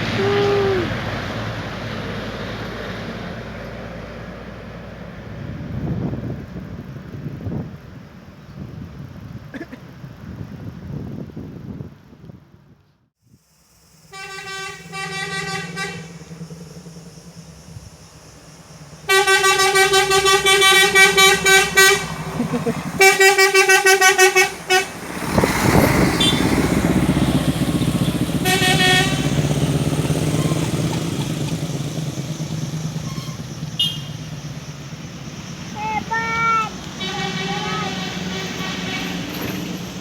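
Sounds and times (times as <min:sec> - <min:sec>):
large vehicle passing close: 0:00.0 - 0:07.6, 0:13.7 - 0:40.0
bus horn pulsing blasts: 0:14.1 - 0:16.6, 0:19.0 - 0:31.8, 0:33.0 - 0:34.5, 0:35.8 - 0:39.9.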